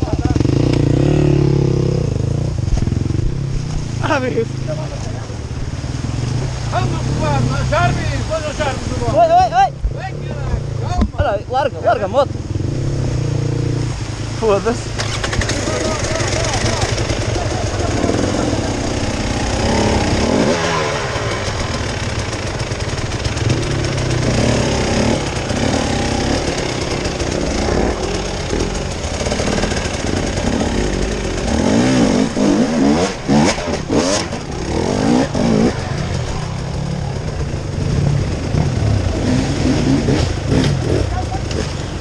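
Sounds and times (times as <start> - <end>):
motorcycle engines revving: 0.0 - 42.0.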